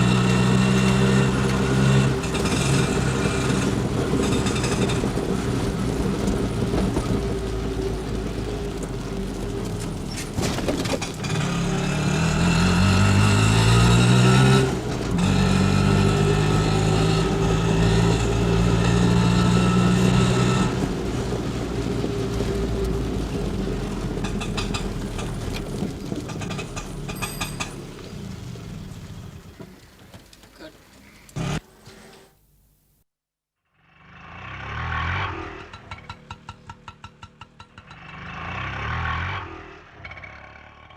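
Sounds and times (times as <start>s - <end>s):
auto rickshaw engine revving: 0.0s - 30.0s, 31.3s - 31.6s, 33.8s - 40.9s.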